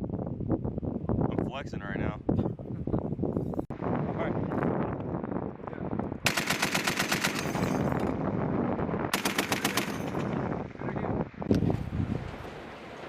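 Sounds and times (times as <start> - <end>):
machine gun bursts: 6.3 - 7.8, 9.1 - 10.2.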